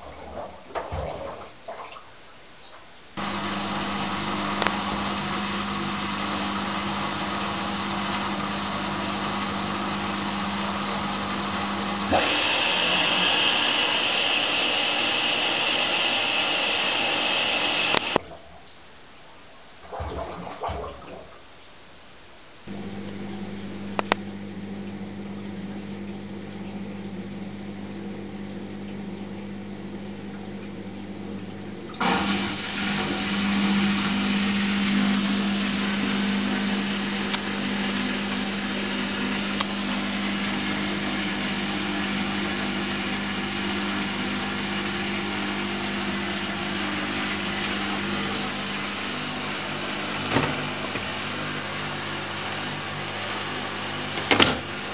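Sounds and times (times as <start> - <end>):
washing machine hum: 0.0 - 2.0, 3.2 - 18.7, 19.8 - 21.4, 22.6 - 54.9
rushing water: 3.2 - 18.6, 28.3 - 54.9
washing machine click: 50.2 - 51.1, 54.2 - 54.8.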